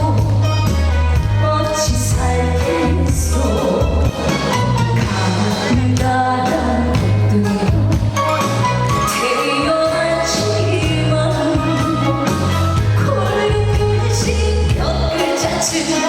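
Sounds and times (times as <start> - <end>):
band accompaniment: 0.0 - 16.0
person singing: 9.0 - 16.0.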